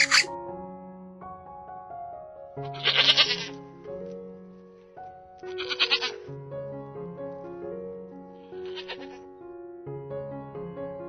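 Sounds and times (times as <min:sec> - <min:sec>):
short wavering animal call: 0:00.0 - 0:00.3
background music: 0:00.0 - 0:11.0.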